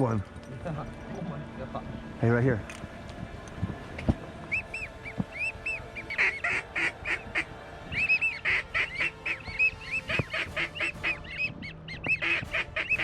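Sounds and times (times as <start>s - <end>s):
duck whistled calls: 4.5s - 13.0s
raspy duck quacks: 12.1s - 13.0s.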